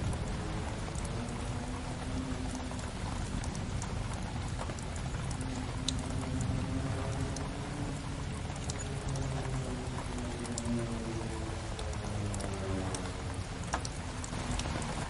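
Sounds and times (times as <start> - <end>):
wood fire crackling: 0.0 - 7.5, 8.1 - 15.0
steady rain: 0.0 - 15.0
fire popping and snapping: 13.6 - 15.0.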